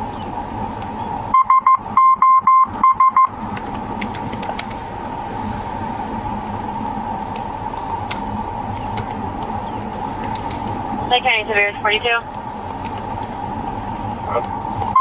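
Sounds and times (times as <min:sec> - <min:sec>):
steady background hum: 0:00.0 - 0:15.0
electronic beep tones: 0:01.3 - 0:03.4.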